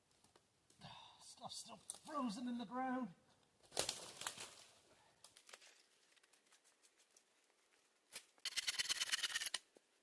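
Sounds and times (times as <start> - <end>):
twigs ticking: 1.8 - 2.2, 3.3 - 9.4
dry brush crackling and rustling: 3.6 - 8.4.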